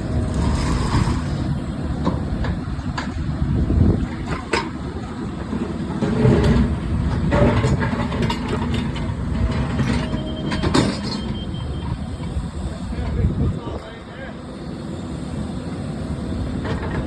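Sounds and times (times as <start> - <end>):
excavator engine rumbling: 0.0 - 17.0
metallic clanks and scrapes: 0.3 - 1.5.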